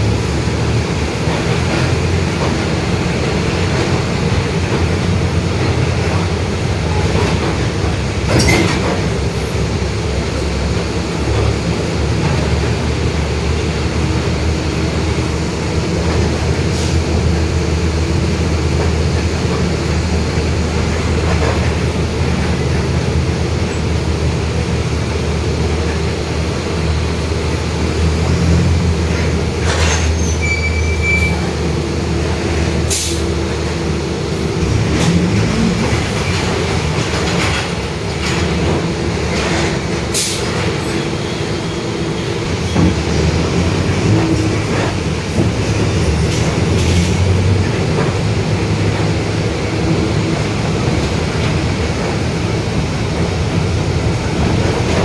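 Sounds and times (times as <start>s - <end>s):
bus diesel engine drone: 0.0s - 55.0s
road rumble: 0.0s - 55.0s
knocks and rattles: 34.6s - 41.0s, 42.6s - 55.0s.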